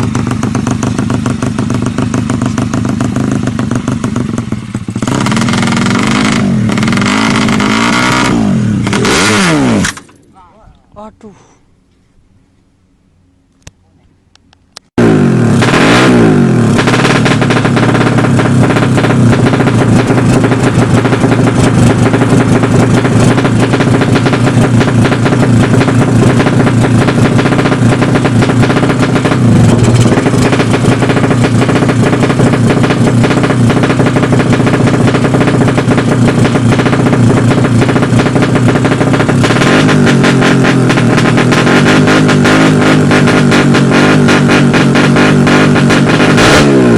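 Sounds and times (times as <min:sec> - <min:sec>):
motorcycle engine revving high: 0:00.0 - 0:11.1, 0:15.0 - 0:46.9.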